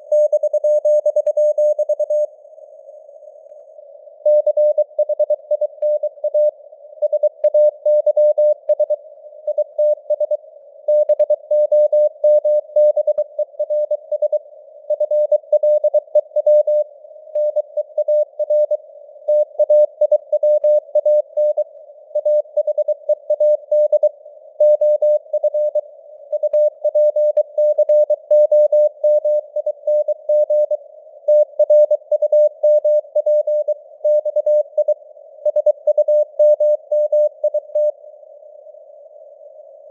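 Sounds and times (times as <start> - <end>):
morse code beeps: 4.3 - 16.8, 22.2 - 25.8, 26.4 - 37.9.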